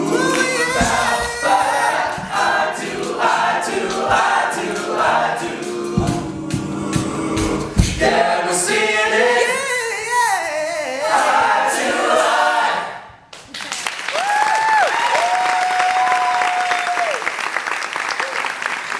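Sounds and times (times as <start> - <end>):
male a cappella group singing: 0.0 - 13.1
audience applause and cheering: 13.4 - 18.9.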